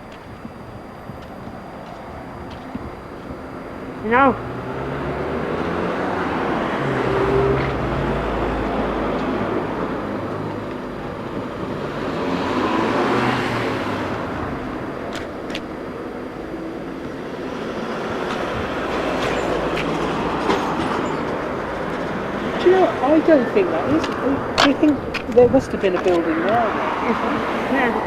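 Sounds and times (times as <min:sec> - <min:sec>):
passing vehicles rumbling: 0:00.0 - 0:28.0.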